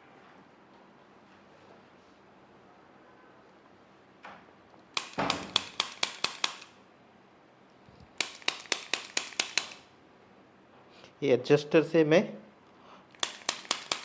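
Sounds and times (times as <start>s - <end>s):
adjusting instrument sharp clicks: 5.0s - 6.8s, 8.2s - 9.9s, 13.1s - 14.0s.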